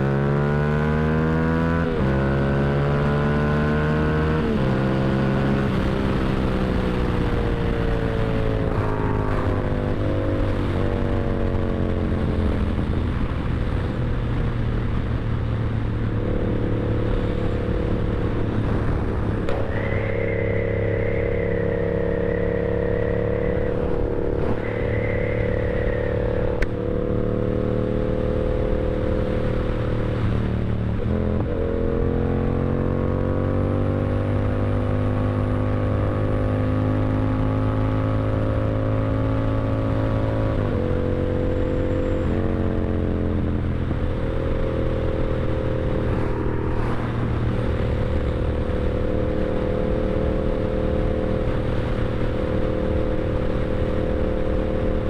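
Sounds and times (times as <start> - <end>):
motorcycle engine running: 3.3 - 36.3, 40.8 - 55.0
thin high whine: 19.4 - 27.1.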